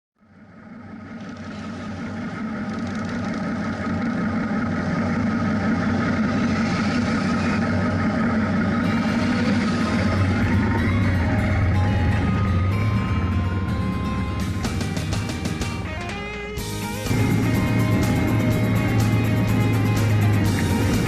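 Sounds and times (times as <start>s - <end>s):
motorcycle engine running: 0.2s - 21.0s
road and wind noise: 0.6s - 21.0s
music: 8.8s - 21.0s.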